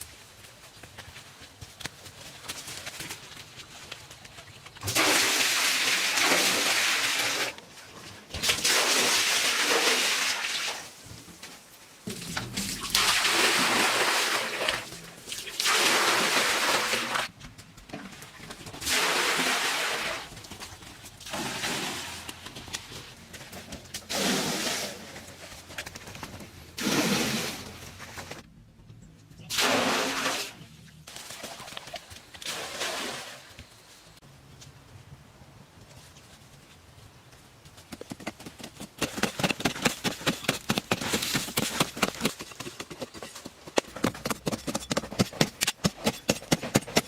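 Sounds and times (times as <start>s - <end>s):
water splashing and sloshing: 2.5s - 28.5s, 29.5s - 34.2s.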